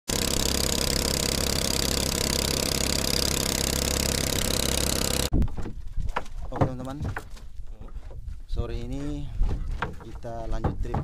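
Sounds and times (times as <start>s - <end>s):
boat engine running: 0.1s - 5.3s.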